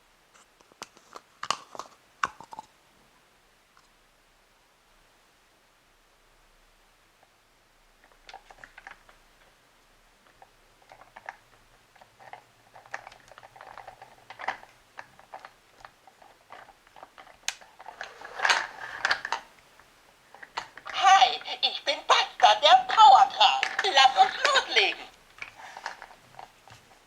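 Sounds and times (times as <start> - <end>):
plastic toy parts clicking: 22.8 - 24.6.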